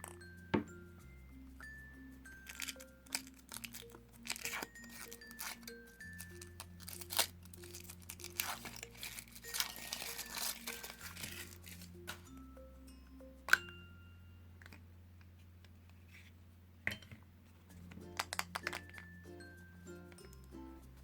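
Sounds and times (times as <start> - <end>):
light background music: 0.0 - 15.1, 17.6 - 21.0
foil wrapper crinkling and tearing: 2.4 - 12.2.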